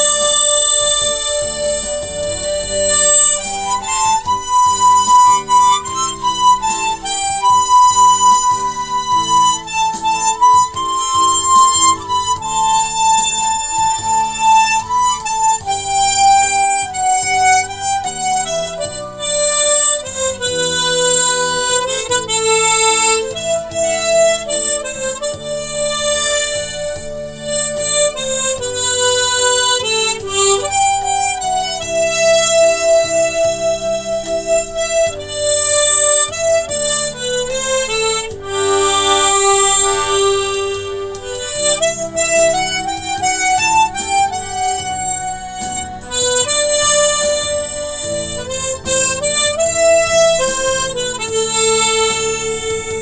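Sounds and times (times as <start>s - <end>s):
chordal accompaniment: 0.0s - 53.0s
harmonica melody: 0.0s - 53.0s.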